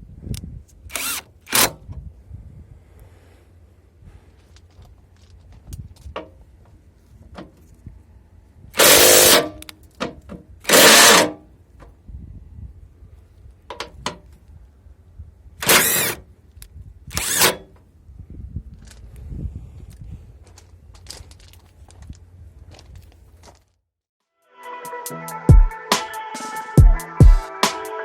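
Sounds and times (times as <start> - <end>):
cordless impact wrench hammering: 8.8 - 9.7, 10.7 - 11.4, 15.6 - 16.2, 17.2 - 17.7.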